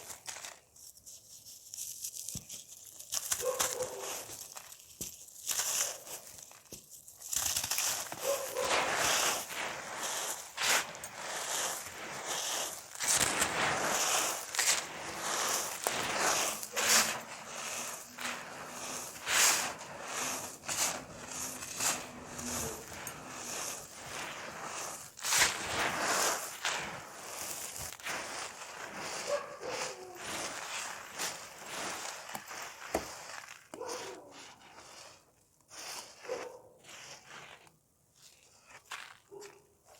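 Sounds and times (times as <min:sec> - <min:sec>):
dry cake crumbling: 0:00.0 - 0:35.2
dry cake crumbled by hand: 0:01.6 - 0:08.3.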